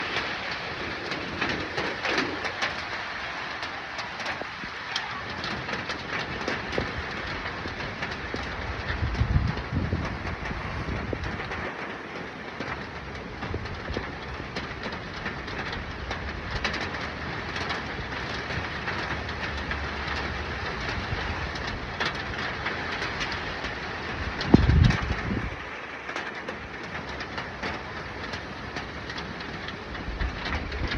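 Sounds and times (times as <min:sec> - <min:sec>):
steady rain falling: 0:00.0 - 0:30.9
low rumbling bump: 0:08.7 - 0:11.8.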